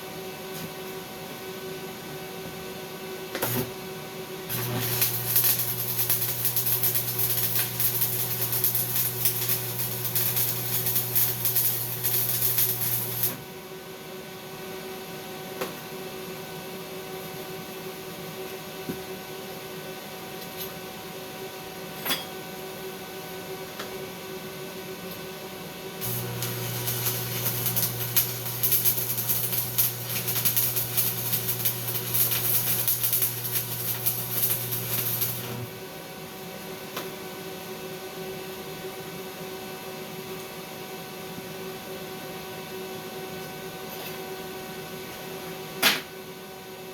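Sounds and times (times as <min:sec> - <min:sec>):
welding arc crackling and sizzling: 0:04.5 - 0:13.5, 0:26.0 - 0:35.9
welding machine hum: 0:04.5 - 0:13.5, 0:26.0 - 0:36.0.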